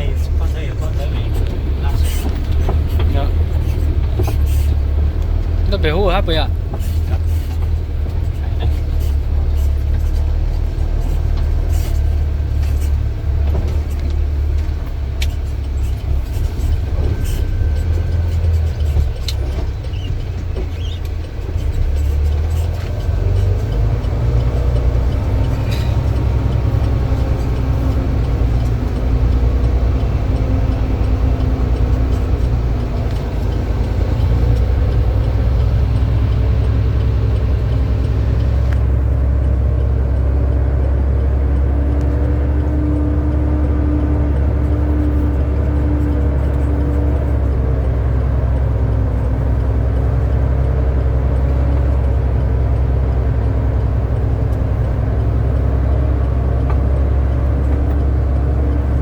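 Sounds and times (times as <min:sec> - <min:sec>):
heavy diesel engine running: 0:00.0 - 0:59.0
metal clanks and knocks: 0:00.1 - 0:05.6.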